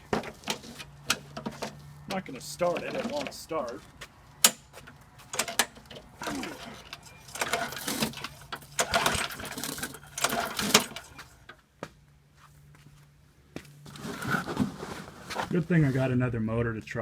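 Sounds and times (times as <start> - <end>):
engine turning over: 0.0 - 11.6
lawnmower recoil cord pulls: 0.0 - 11.6, 13.8 - 15.8.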